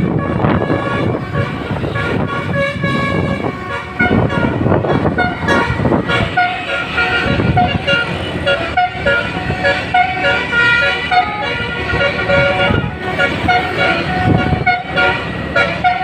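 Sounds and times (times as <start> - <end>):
bus engine running: 0.0 - 16.0
bus horn playing a tune: 0.0 - 16.0.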